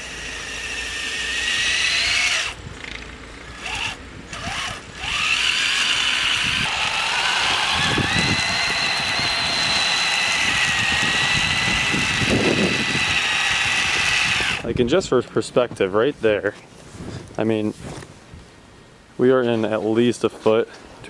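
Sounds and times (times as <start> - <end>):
electric motor whining: 0.0 - 2.6, 3.4 - 14.7.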